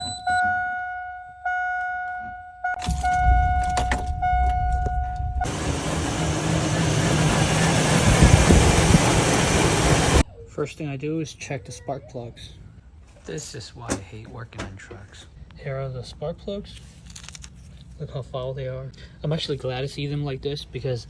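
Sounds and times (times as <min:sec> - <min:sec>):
car warning chime dinging: 0:00.0 - 0:05.9
engine running: 0:02.8 - 0:10.2
loud rushing noise: 0:04.0 - 0:10.2.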